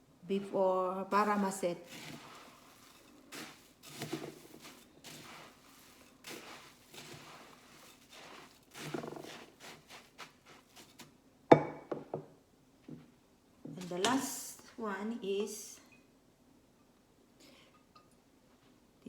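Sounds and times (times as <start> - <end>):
spoon scraping a bowl: 1.2 - 11.1.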